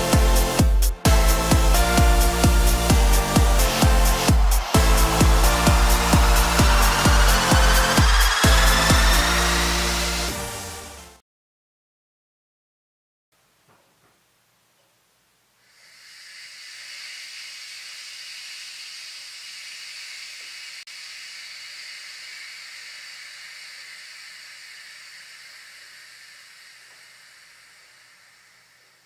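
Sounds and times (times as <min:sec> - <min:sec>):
air hissing out: 0:01.3 - 0:10.7, 0:15.7 - 0:29.0.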